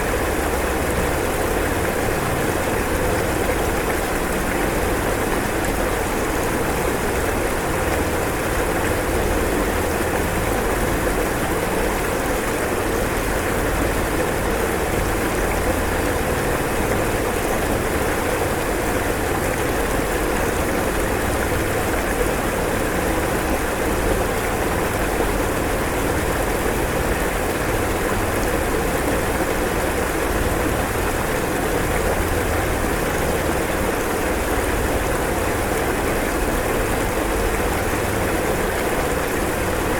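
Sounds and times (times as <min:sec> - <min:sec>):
floodwater roaring: 0:00.0 - 0:39.9.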